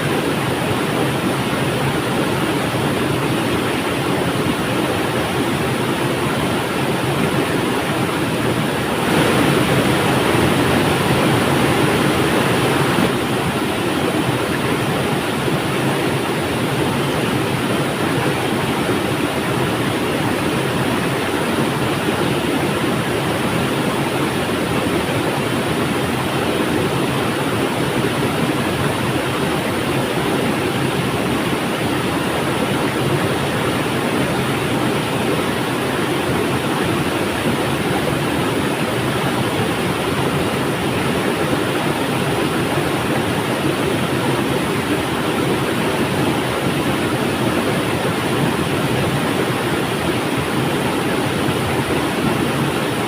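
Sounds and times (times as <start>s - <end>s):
river water rushing: 0.0s - 53.0s.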